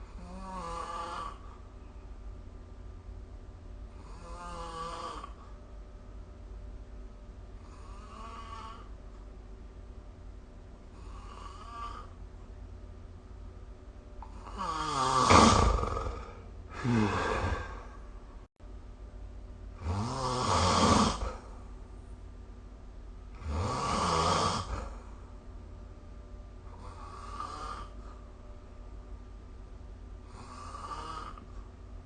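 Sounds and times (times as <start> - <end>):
person snoring: 0.1 - 1.5, 4.0 - 5.5, 7.6 - 8.9, 10.9 - 12.2, 14.2 - 18.0, 19.8 - 21.5, 23.4 - 25.0, 26.7 - 28.2, 30.2 - 31.5.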